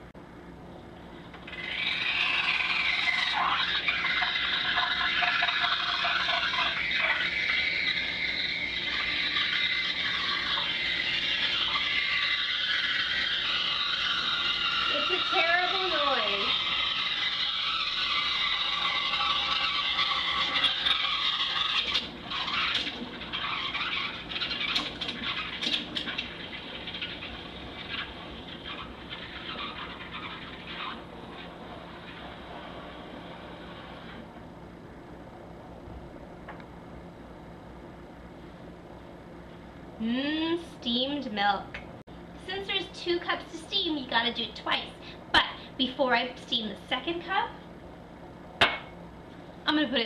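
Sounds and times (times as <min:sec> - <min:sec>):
steam wand hissing in milk: 0:01.5 - 0:34.3.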